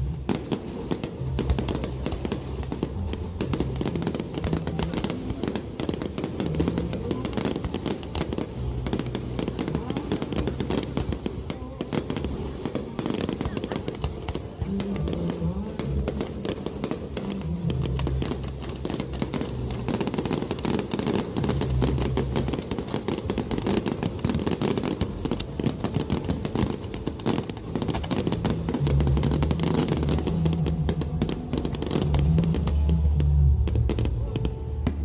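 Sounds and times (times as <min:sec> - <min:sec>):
fireworks bursting and crackling: 0:00.0 - 0:35.0.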